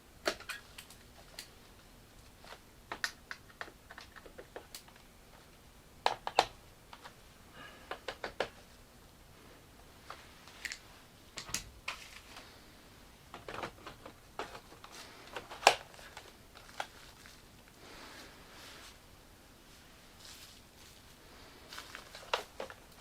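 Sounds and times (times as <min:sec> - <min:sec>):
plastic parts clicking and tapping: 0:00.2 - 0:01.5, 0:02.4 - 0:05.1, 0:06.0 - 0:07.2, 0:07.9 - 0:08.7, 0:11.4 - 0:12.4, 0:13.3 - 0:17.4.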